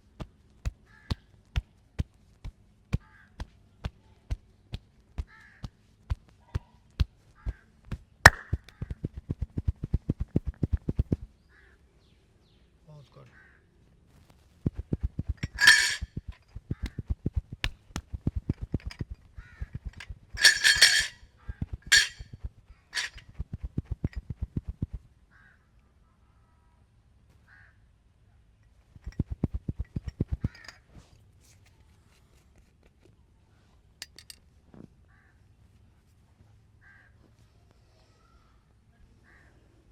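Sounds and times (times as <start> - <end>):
hands beating on body: 0.2 - 10.6
harsh caw-like calls: 0.9 - 1.3, 5.3 - 5.8, 13.3 - 13.7, 25.3 - 25.7, 27.4 - 27.8, 36.8 - 37.3.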